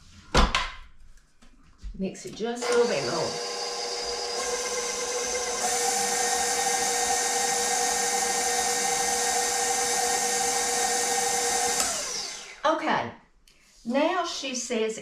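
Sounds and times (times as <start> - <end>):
electric mixer whining: 2.6 - 12.6.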